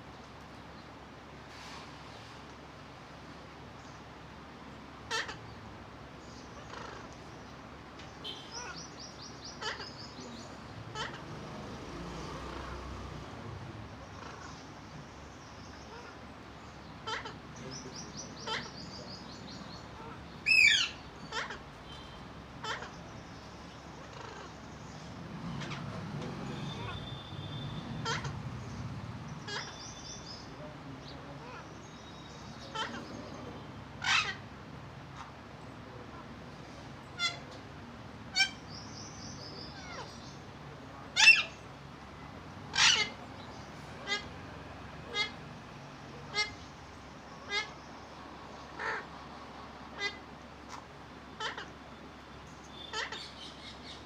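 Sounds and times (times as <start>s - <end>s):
parrot squawking: 5.1s - 5.4s, 6.6s - 7.2s, 8.2s - 9.0s, 9.6s - 10.2s, 10.9s - 11.4s, 14.0s - 14.6s, 17.0s - 17.6s, 18.4s - 18.9s, 19.9s - 22.0s, 22.6s - 24.6s, 25.5s - 28.5s, 29.4s - 30.4s, 32.4s - 34.5s, 37.1s - 37.5s, 38.3s - 38.8s, 39.6s - 40.2s, 41.1s - 41.6s, 42.6s - 44.4s, 45.1s - 45.4s, 46.2s - 46.6s, 47.4s - 47.8s, 48.7s - 49.1s, 49.9s - 51.8s, 52.7s - 54.0s.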